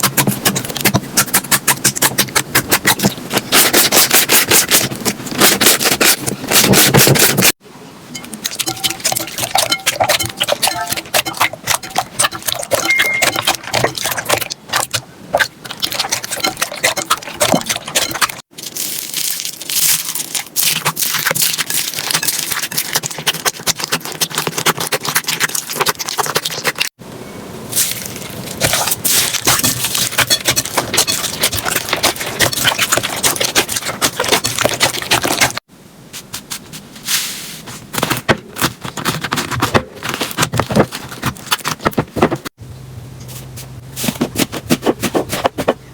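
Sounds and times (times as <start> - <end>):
slime crackling and popping: 18.1 - 26.8.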